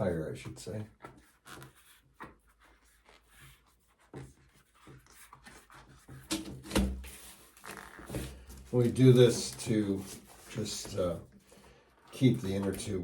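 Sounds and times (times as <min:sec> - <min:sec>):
rubber rubbing and scuffing: 0:00.0 - 0:13.0.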